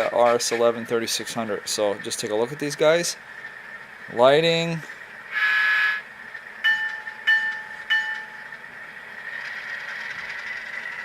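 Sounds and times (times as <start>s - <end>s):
steady high whine: 0.0s - 11.0s
model train horn toots: 5.3s - 6.1s.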